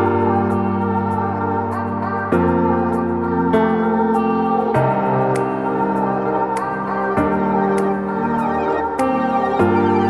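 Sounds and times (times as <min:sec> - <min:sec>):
sustained keyboard chords: 0:00.0 - 0:10.0.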